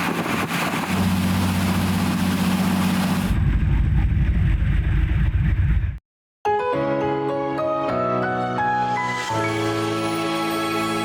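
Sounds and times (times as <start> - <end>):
low engine rumble: 0.0 - 6.0
engine humming: 0.5 - 3.4.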